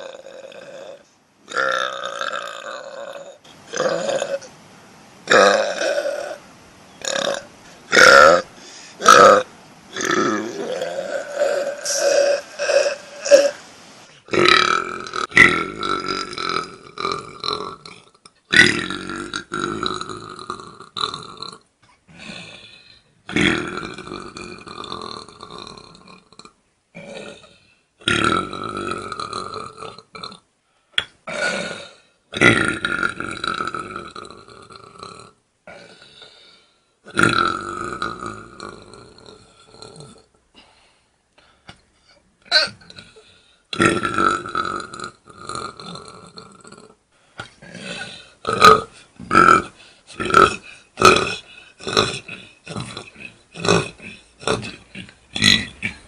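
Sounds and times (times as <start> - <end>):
men belching: 0.0 - 4.5, 5.3 - 6.4, 7.0 - 13.6, 14.3 - 21.6, 42.5 - 46.9, 47.6 - 56.0
brief burps: 42.5 - 43.1.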